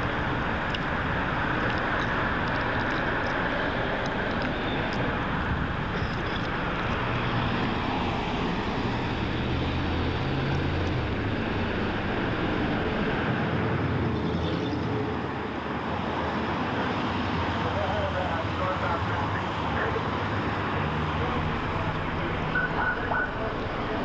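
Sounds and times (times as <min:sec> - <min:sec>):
truck engine running: 0:00.0 - 0:13.2, 0:20.6 - 0:24.0.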